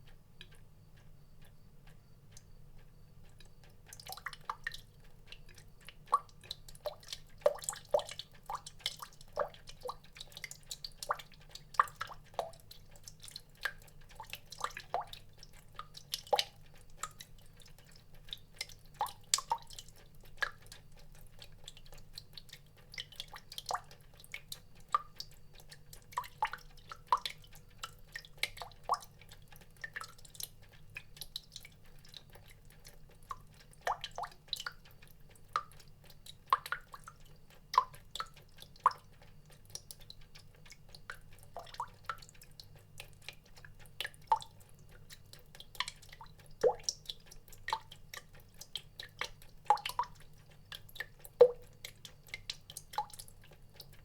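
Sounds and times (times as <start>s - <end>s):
water drops plinking into water: 21.8s - 54.0s.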